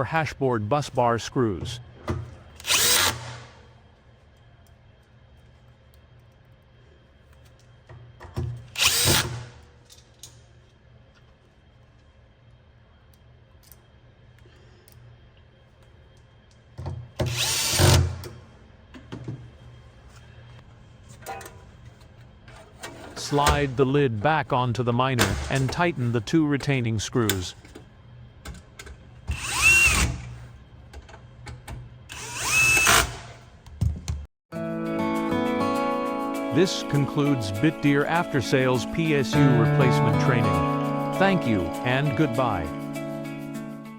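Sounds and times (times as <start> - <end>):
powered screwdriver driving screws: 17.3 - 18.1, 32.1 - 33.2.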